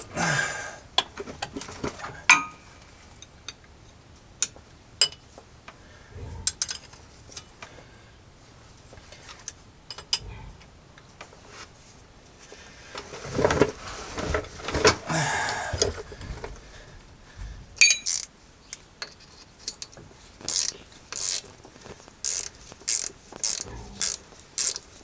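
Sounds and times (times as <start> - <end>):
metallic clicks of hand tools: 17.8 - 25.0.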